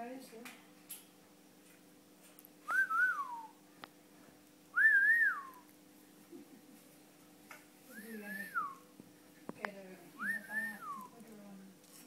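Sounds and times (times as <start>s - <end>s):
whistled phrases sliding down: 2.7s - 3.6s, 4.8s - 5.6s.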